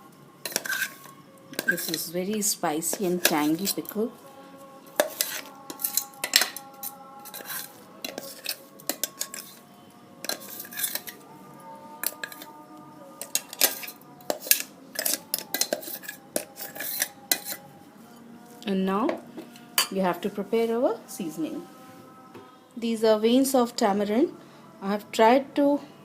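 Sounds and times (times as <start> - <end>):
metal spoon clinking on steel: 0.4 - 4.0, 5.0 - 9.6, 10.2 - 11.2, 12.0 - 12.5, 13.2 - 17.6.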